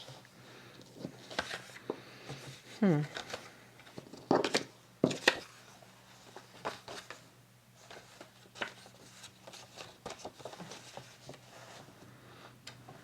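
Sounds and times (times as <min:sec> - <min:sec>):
faint steady hum: 0:00.0 - 0:13.0
paper rustling: 0:00.9 - 0:01.8, 0:02.4 - 0:07.2, 0:07.8 - 0:12.0.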